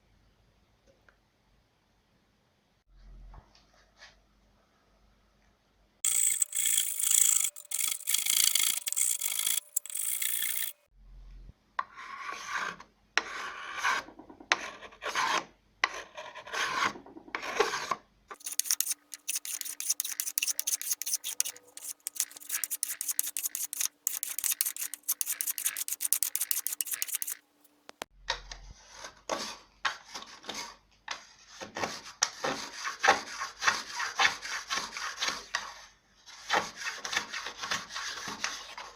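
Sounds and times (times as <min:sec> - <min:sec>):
hand tool scraping wood: 0:06.0 - 0:10.8, 0:18.4 - 0:28.1.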